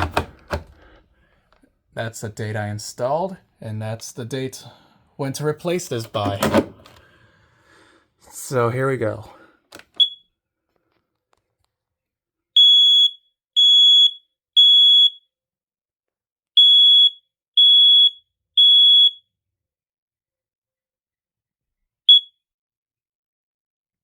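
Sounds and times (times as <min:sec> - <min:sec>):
smoke alarm high-pitched beeps: 0:10.0 - 0:10.3, 0:12.6 - 0:15.3, 0:16.6 - 0:19.3, 0:22.1 - 0:22.4.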